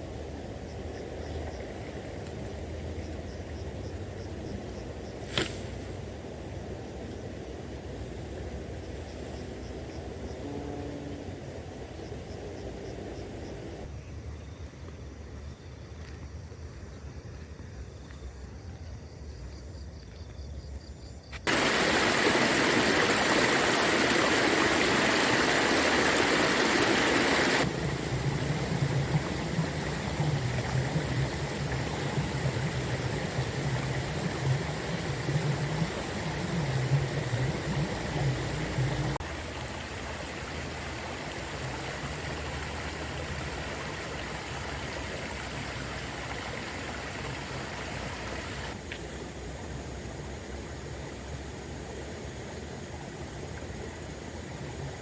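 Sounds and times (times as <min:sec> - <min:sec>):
river water rushing over stones: 0:21.5 - 0:48.8.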